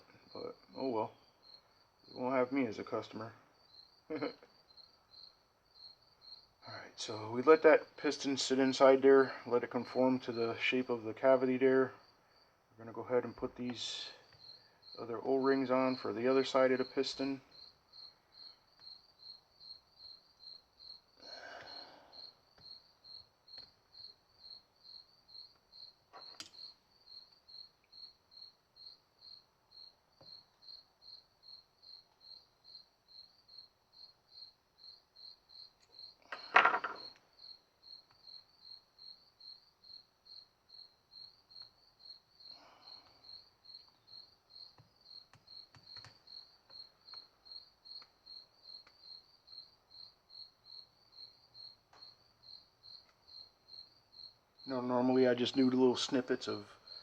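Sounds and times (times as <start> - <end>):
cricket chirping: 0.0 - 57.0.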